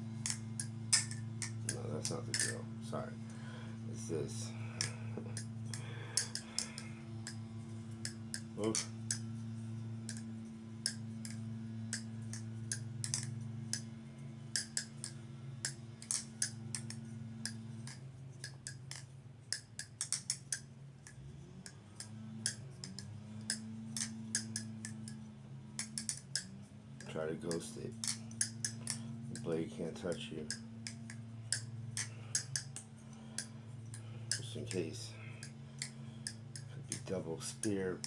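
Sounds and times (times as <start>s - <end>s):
low hum: 0.0s - 38.0s
butterfly knife clicking: 0.2s - 2.6s, 4.4s - 7.4s, 10.8s - 13.9s, 14.5s - 20.7s, 25.8s - 37.8s.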